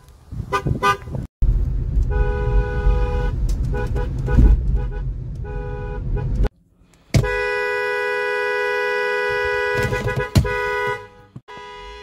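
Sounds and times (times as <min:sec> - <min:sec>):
locomotive chord air horn: 0:07.2 - 0:12.0.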